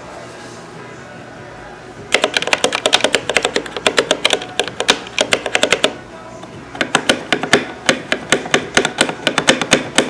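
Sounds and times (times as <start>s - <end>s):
mechanical keyboard keys clacking: 2.1s - 5.9s.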